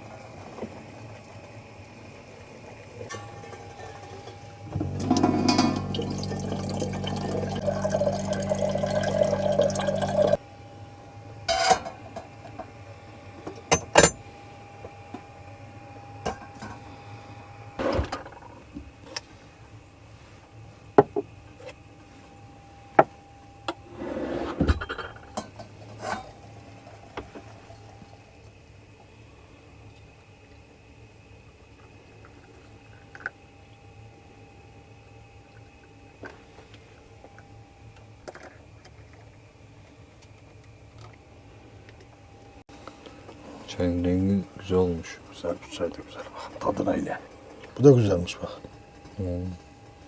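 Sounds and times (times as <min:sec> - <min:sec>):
water running: 0:00.0 - 0:10.4
electric pump humming: 0:00.0 - 0:11.4
dishes clinking: 0:03.1 - 0:10.4, 0:11.5 - 0:12.6.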